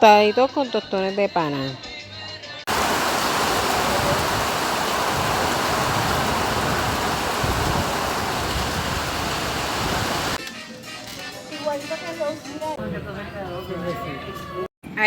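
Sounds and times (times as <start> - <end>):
loud rushing noise: 2.7 - 10.4.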